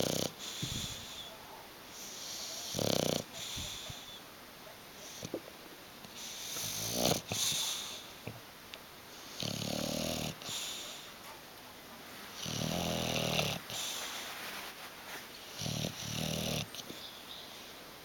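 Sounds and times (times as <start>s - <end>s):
dog snoring: 0.0s - 1.2s, 2.2s - 4.0s, 6.2s - 8.0s, 9.3s - 10.9s, 12.4s - 14.0s, 15.5s - 17.0s.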